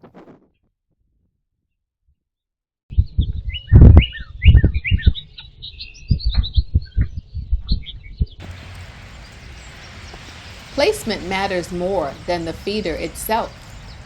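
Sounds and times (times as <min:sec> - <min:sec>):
small birds chirping: 0:02.9 - 0:14.0
steady hiss: 0:08.4 - 0:14.0.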